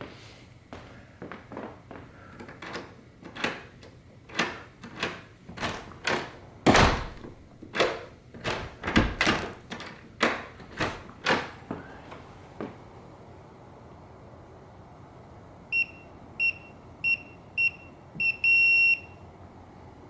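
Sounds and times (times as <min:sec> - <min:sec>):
lock parts clicking and knocking: 0:01.5 - 0:11.8.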